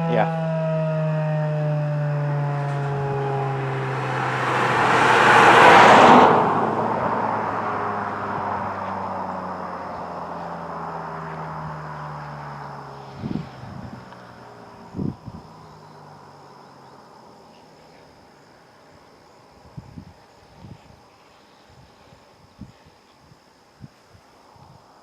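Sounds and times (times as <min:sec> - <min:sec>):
warning siren winding down: 0:00.0 - 0:16.3
passing vehicle: 0:00.0 - 0:25.0.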